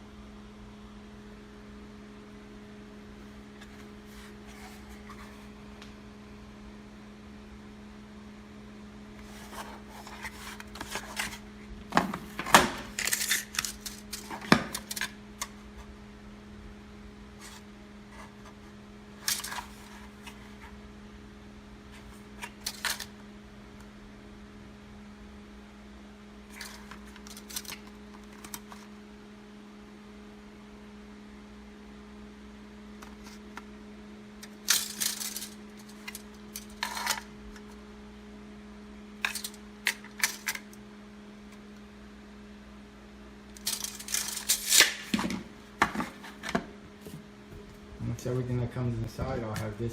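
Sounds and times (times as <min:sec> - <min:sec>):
steady low hum: 0:00.0 - 0:49.9.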